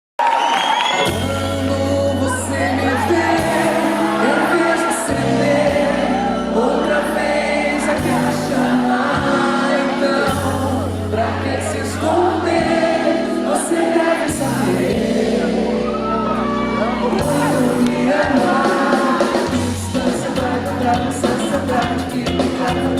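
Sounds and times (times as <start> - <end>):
live band music: 0.6 - 22.9
person singing: 0.9 - 22.9
held bass notes: 1.1 - 22.9.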